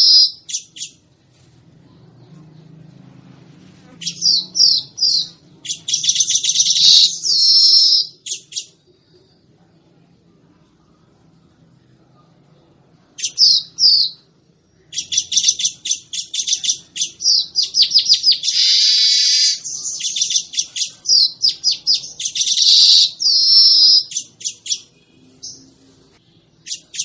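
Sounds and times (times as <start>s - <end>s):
bird chattering: 4.0s - 8.8s, 14.9s - 25.6s, 26.6s - 27.0s.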